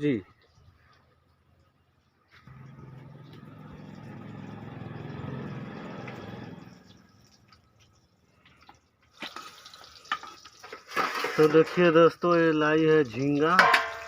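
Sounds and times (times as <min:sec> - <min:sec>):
vehicle engine passing by: 0:02.4 - 0:07.5.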